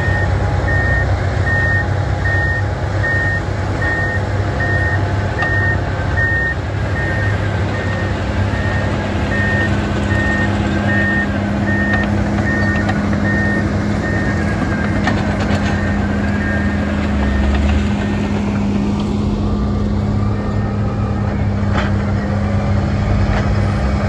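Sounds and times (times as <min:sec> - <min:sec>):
reversing alarm beeping: 0:00.0 - 0:18.8, 0:19.4 - 0:22.6
heavy machine engine running: 0:00.0 - 0:24.0.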